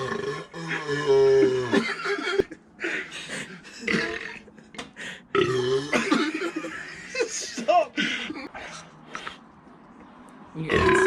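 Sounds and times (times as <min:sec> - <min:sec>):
man burping: 0:00.0 - 0:02.6, 0:03.8 - 0:04.5, 0:05.3 - 0:06.8.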